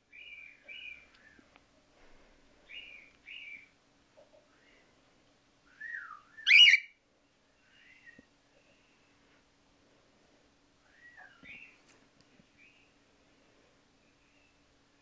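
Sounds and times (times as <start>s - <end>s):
cockatiel whistling: 5.8s - 6.9s.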